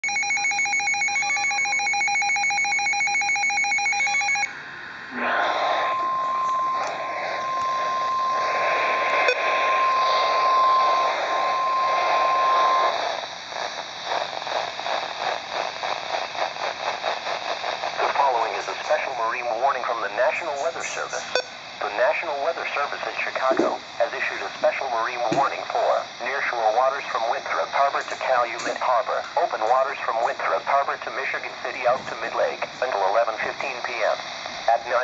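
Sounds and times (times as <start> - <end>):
steady warning alarm tone: 0.0 - 13.7, 18.0 - 35.0
radio static: 0.1 - 35.0
electronic alert beeping: 5.2 - 12.5.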